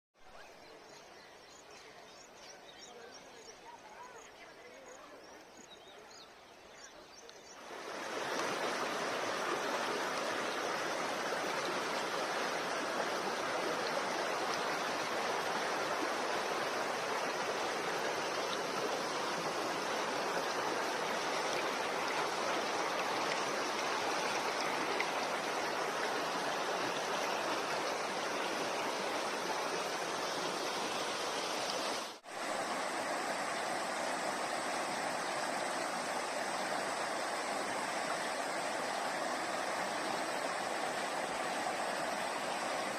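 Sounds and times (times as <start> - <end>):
waterfall rushing: 7.6 - 42.9.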